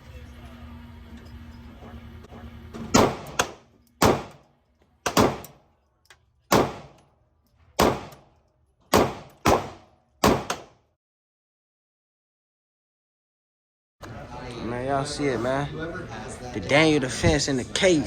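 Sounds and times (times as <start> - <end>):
gunshots echoing: 2.9 - 5.6, 6.5 - 7.0, 7.8 - 8.3, 8.9 - 10.8.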